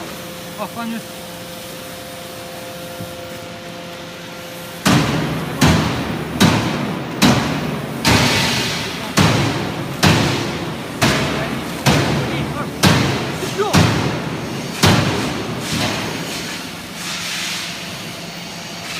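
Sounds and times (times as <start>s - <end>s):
baling machine motor hum: 0.0s - 17.0s
baling machine heavy thuds: 4.8s - 16.6s.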